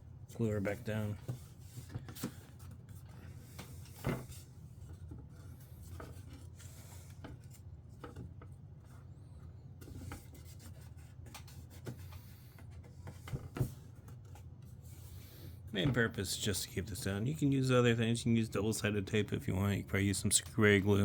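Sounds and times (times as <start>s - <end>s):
steady low hum: 14.8s - 21.0s.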